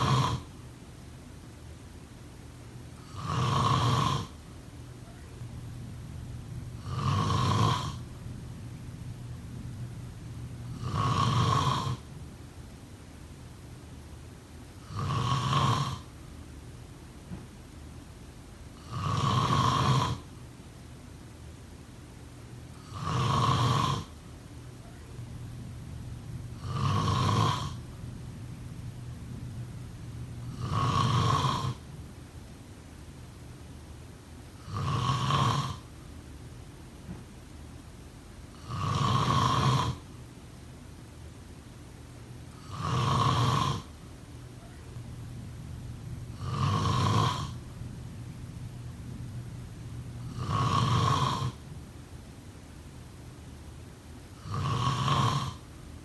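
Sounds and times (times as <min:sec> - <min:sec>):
person snoring: 0:00.0 - 0:00.5, 0:03.0 - 0:04.4, 0:06.7 - 0:08.2, 0:10.6 - 0:12.1, 0:14.8 - 0:16.1, 0:18.8 - 0:20.3, 0:22.8 - 0:24.1, 0:26.2 - 0:28.4, 0:29.6 - 0:31.9, 0:34.6 - 0:35.8, 0:38.5 - 0:40.1, 0:42.6 - 0:43.9, 0:45.0 - 0:51.7, 0:54.4 - 0:55.6.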